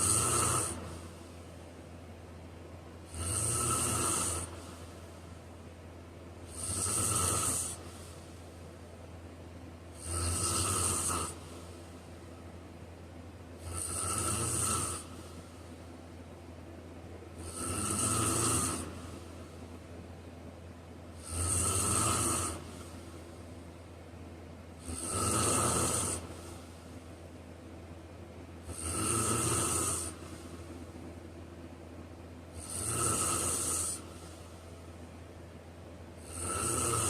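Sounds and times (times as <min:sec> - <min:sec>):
man snoring: 0:00.0 - 0:01.1, 0:03.0 - 0:05.0, 0:06.4 - 0:08.2, 0:09.9 - 0:11.8, 0:13.6 - 0:15.5, 0:17.4 - 0:19.5, 0:21.2 - 0:23.0, 0:24.8 - 0:26.7, 0:28.6 - 0:30.7, 0:32.5 - 0:34.6, 0:36.2 - 0:37.0.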